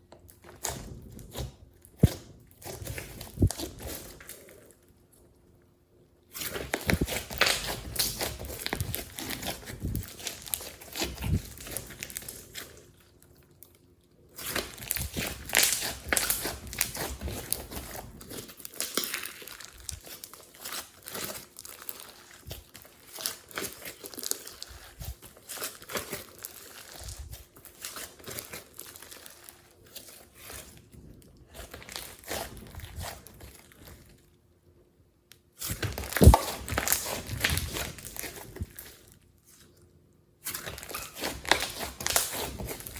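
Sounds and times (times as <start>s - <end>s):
slime squished by hand: 6.3s - 13.4s, 14.3s - 34.1s, 35.6s - 39.7s, 40.4s - 42.9s.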